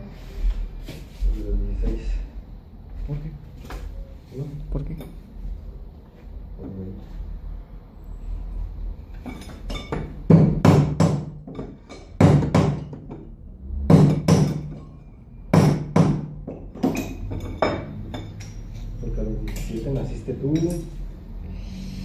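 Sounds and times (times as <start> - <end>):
hammer striking steel: 13.9 - 18.6.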